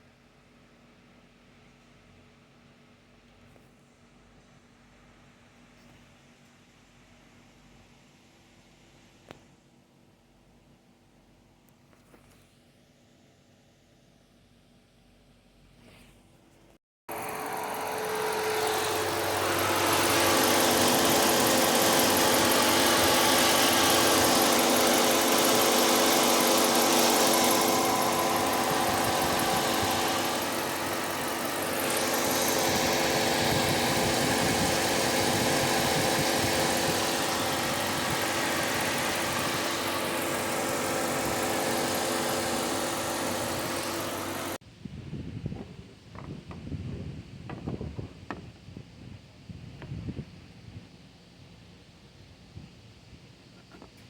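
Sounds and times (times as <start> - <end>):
car engine running with hiss: 17.1 - 44.6.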